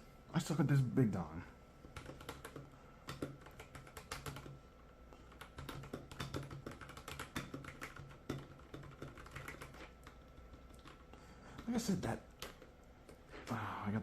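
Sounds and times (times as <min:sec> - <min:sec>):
mechanical keyboard typing: 0:01.9 - 0:04.6, 0:05.3 - 0:11.8.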